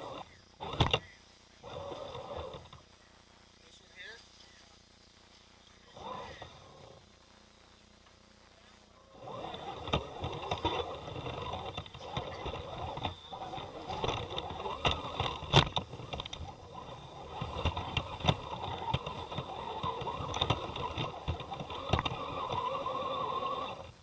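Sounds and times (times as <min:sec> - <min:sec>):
electric motor whine: 0:00.0 - 0:03.8, 0:04.4 - 0:24.0
tyres and chassis knocking on rocks: 0:09.6 - 0:22.8.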